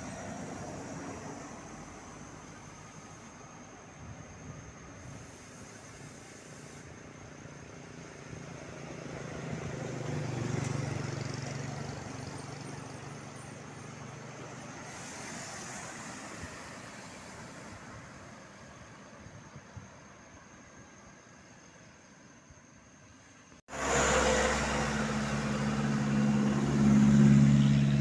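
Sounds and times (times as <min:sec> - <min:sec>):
traffic noise: 0:00.0 - 0:28.0
vehicle driving past: 0:08.6 - 0:17.3, 0:23.7 - 0:28.0.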